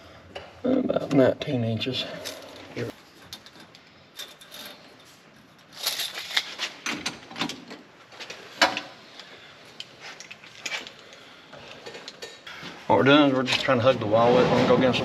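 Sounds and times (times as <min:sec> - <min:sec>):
pipe and tools rattling and scraping: 0:02.0 - 0:08.9, 0:09.8 - 0:12.5.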